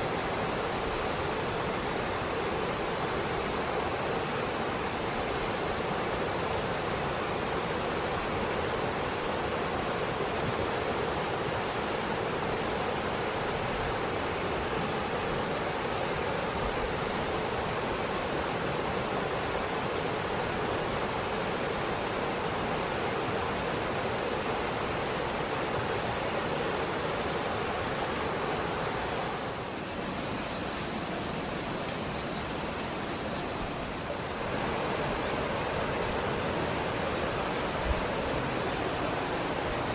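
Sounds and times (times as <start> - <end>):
insect chorus shrilling: 0.0 - 39.9.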